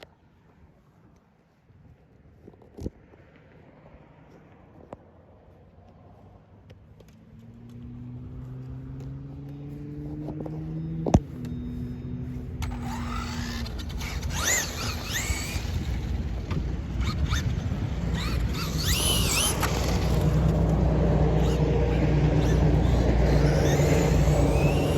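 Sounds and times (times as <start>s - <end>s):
electric motor whining: 8.4s - 24.9s.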